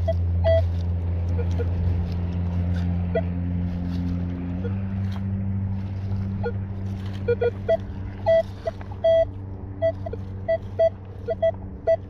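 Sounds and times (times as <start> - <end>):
metal detector beeps: 0.0 - 1.8, 6.4 - 12.0
steady low hum: 0.0 - 12.0.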